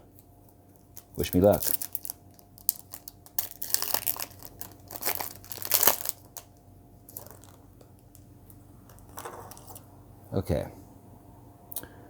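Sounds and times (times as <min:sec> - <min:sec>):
card pack wrapper crinkling and tearing: 0:00.8 - 0:08.2.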